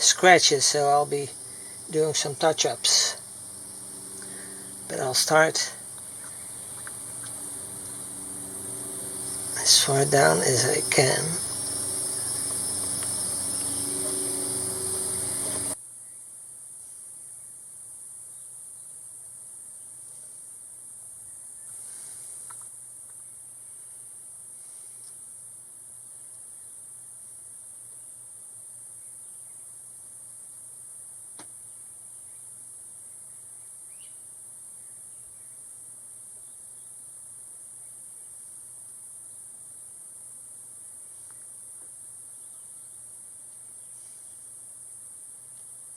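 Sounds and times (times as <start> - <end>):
faint low hum: 0.0 - 15.8
high-pitched hiss: 0.0 - 15.8.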